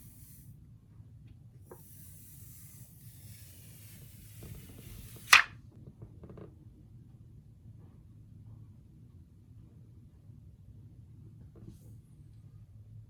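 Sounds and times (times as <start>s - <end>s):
low hiss: 0.0s - 0.5s, 1.7s - 5.5s
loud sharp snap: 5.1s - 5.5s.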